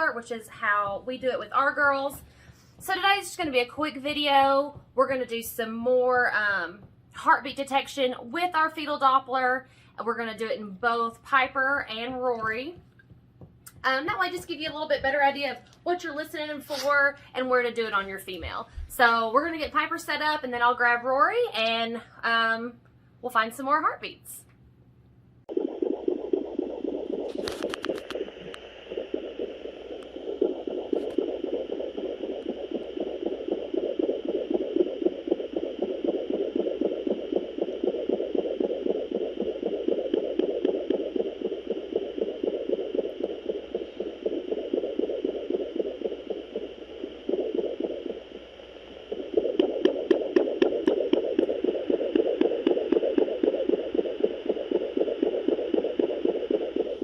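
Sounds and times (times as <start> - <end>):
doppler heartbeat pulsing: 0.0 - 9.4, 10.1 - 16.6, 17.4 - 21.0, 25.4 - 57.0
sharp crackles: 25.5 - 57.0.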